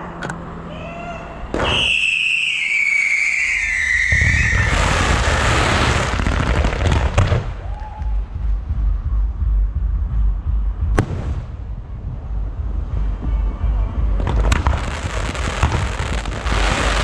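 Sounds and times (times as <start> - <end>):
sharp bangs: 1.4 - 2.7, 10.9 - 12.0
firework launch: 1.5 - 7.6, 11.0 - 11.7, 14.3 - 17.0
fireworks crackling: 1.5 - 7.6, 14.2 - 17.0
falling whistle: 1.6 - 5.3
low rumble: 4.2 - 17.0.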